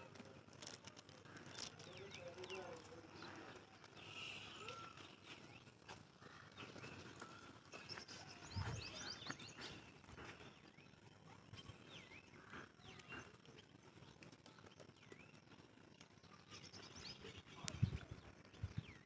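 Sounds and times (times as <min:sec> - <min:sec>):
goat chewing grass: 0:00.0 - 0:04.1.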